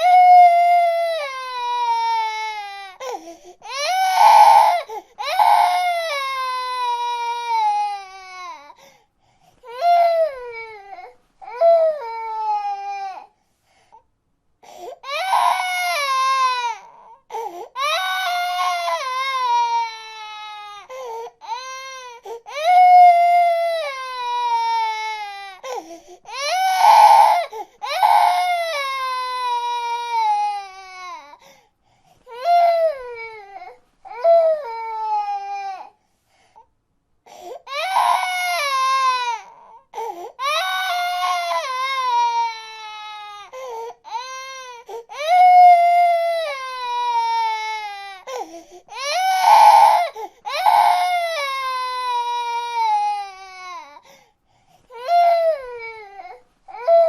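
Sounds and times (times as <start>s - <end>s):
baby crying: 0.0s - 8.8s, 9.6s - 13.3s, 14.9s - 31.4s, 32.3s - 36.0s, 37.3s - 54.1s, 54.9s - 57.0s.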